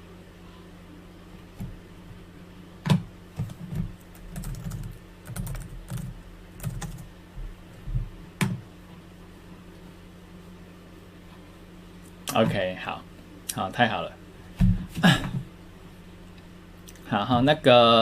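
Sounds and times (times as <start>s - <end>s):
typing on computer keyboard: 4.3s - 7.0s.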